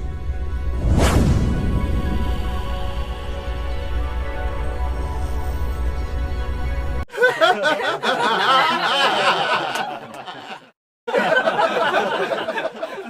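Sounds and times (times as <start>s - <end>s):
music: 0.0s - 7.1s
audience laughter: 7.1s - 13.0s.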